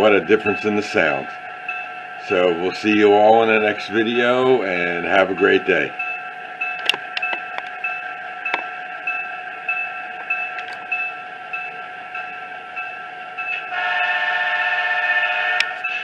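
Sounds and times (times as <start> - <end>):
model train bell ringing: 0.0 - 16.0
air horn blast: 13.7 - 15.8.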